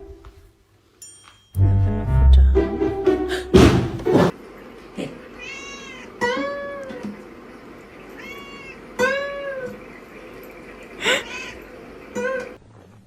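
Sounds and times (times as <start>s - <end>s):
cat meowing: 5.4s - 7.1s, 8.1s - 9.8s, 11.2s - 11.6s.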